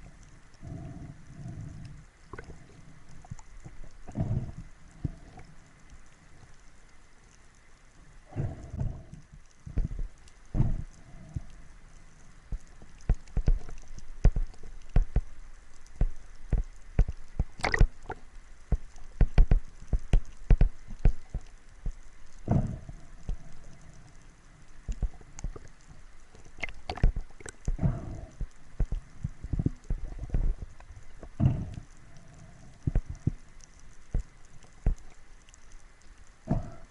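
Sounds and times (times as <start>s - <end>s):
faint hiss: 0.0s - 36.9s
irregular knocks and clicks: 9.3s - 10.9s, 12.5s - 15.3s, 15.9s - 18.1s, 18.7s - 23.4s, 34.0s - 35.2s.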